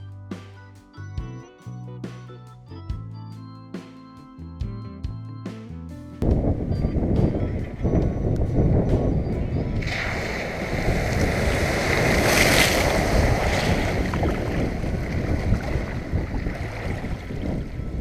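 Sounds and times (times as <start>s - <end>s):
wind buffeting microphone: 6.2s - 18.0s.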